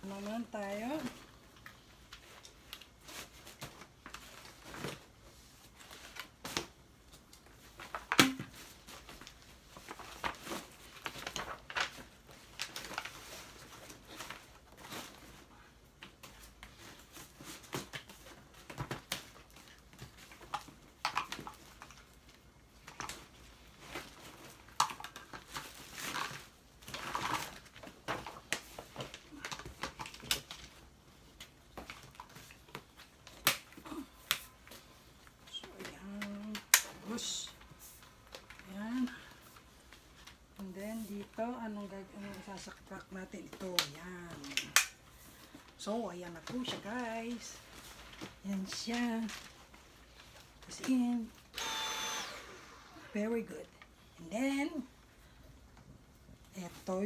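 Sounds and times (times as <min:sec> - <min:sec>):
packaging crinkling: 0:16.0 - 0:41.4.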